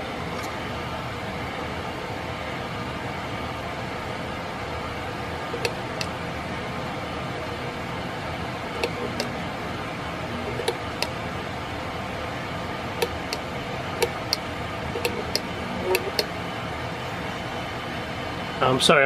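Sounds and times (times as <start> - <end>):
ceiling fan whirring: 0.0 - 19.0
pull-chain switch clicking: 5.6 - 6.1, 8.8 - 9.3, 10.5 - 11.1, 13.0 - 13.4, 15.0 - 16.3.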